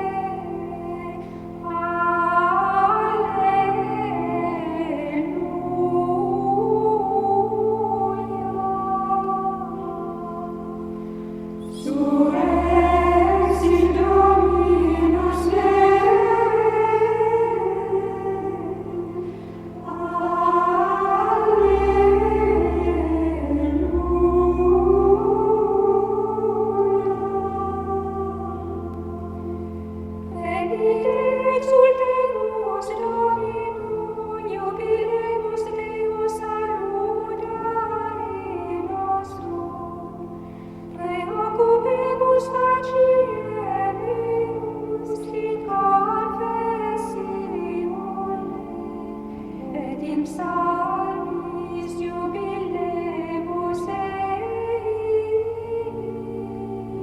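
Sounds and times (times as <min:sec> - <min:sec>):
women singing chant: 0:00.0 - 0:10.6, 0:11.7 - 0:29.3, 0:41.0 - 0:57.0
women's choir chanting: 0:11.7 - 0:29.3.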